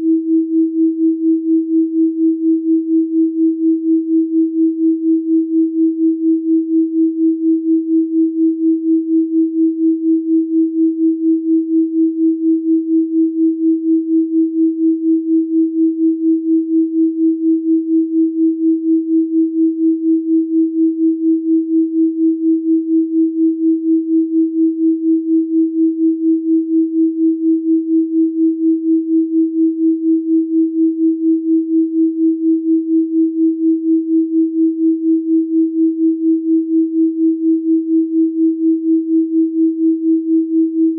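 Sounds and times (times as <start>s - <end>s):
pulsing sine tone: 0.0s - 40.9s.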